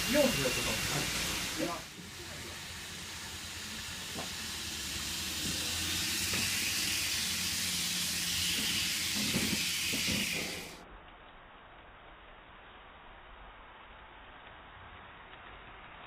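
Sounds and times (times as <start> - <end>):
model train running on track: 0.0 - 10.7.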